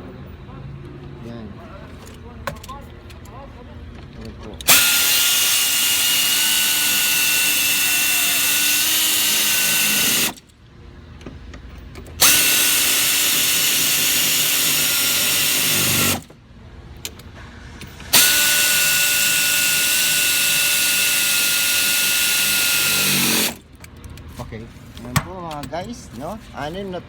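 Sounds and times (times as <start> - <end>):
power drill driving screws: 4.6 - 10.5, 12.2 - 16.3, 18.0 - 23.7.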